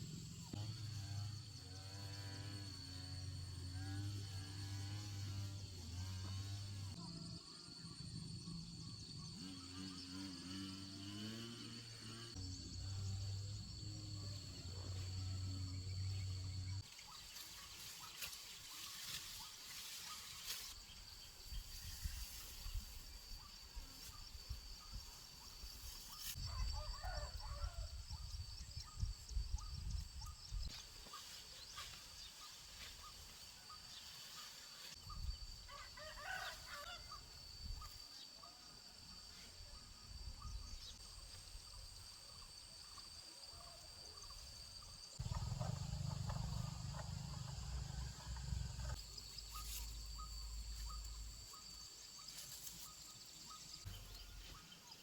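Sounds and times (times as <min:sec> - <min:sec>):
low rumbling: 0:45.2 - 0:49.2.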